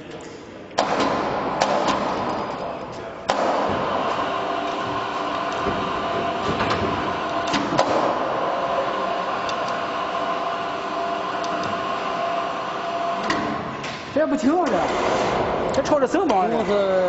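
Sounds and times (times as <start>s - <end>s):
machinery whirring and humming: 0.0s - 17.0s
sharp clicks and knocks: 5.4s - 8.0s.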